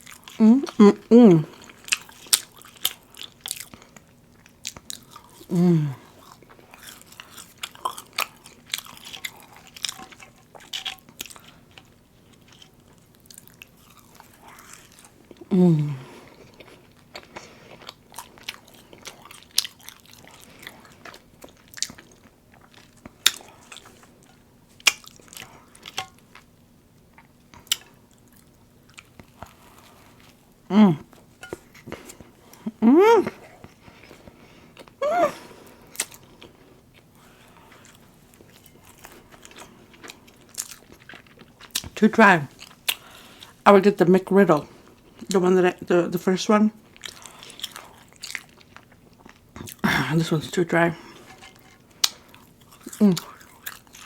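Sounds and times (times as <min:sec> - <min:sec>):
chewing and biting a sandwich: 0:00.0 - 0:43.6, 0:46.8 - 0:54.0
short falling vocal sounds: 0:32.7 - 0:33.4, 0:35.0 - 0:35.5.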